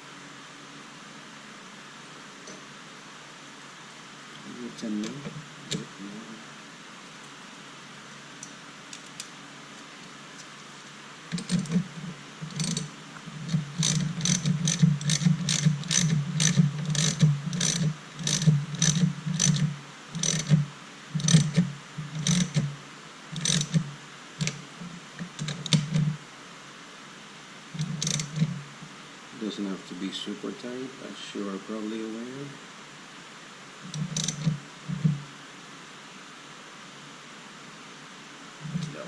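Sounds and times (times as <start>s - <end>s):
ratchet wrench clicking: 11.3s - 20.6s, 21.2s - 22.7s, 23.4s - 24.6s, 27.8s - 28.6s, 33.9s - 35.2s.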